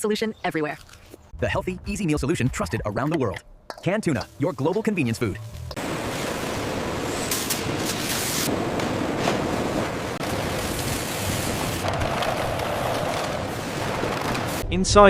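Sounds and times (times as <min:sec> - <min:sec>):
wind: 0:00.0 - 0:14.6
sea surf: 0:05.8 - 0:14.6.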